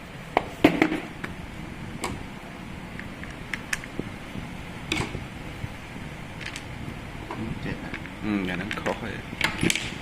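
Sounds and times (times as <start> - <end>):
low background hum: 0.0 - 10.0
tools being handled clicking: 6.4 - 6.7, 7.9 - 9.9.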